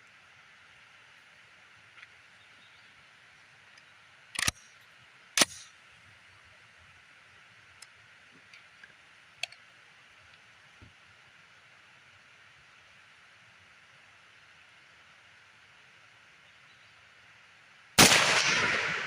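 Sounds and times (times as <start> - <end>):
faint clicks: 1.9 - 2.2, 3.7 - 5.7, 7.8 - 11.0
rifle shots: 5.4 - 5.6, 18.0 - 19.0.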